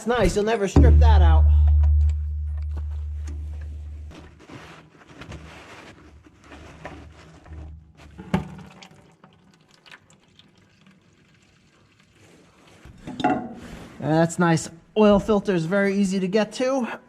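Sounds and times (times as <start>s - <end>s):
sharp metal knock: 0.8s - 4.1s.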